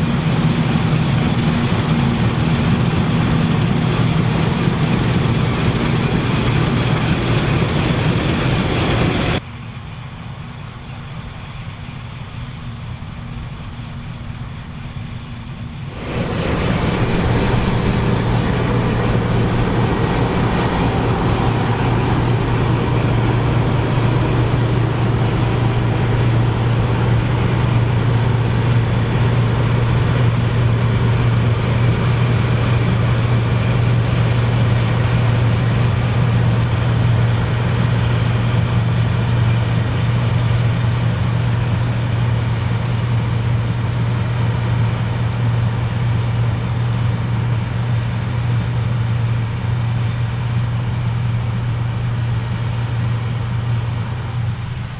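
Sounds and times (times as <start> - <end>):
machinery noise: 0.0 - 9.4, 15.8 - 43.6
combine harvester engine hum: 0.0 - 54.9.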